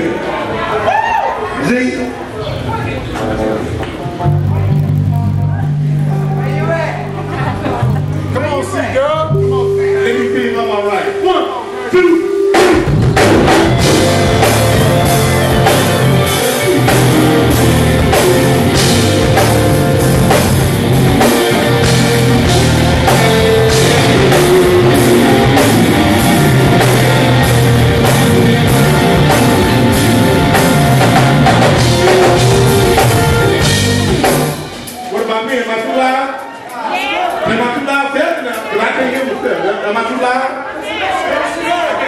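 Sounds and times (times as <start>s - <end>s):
live band playing: 1.4s - 38.8s
drum kit beat: 4.0s - 35.6s.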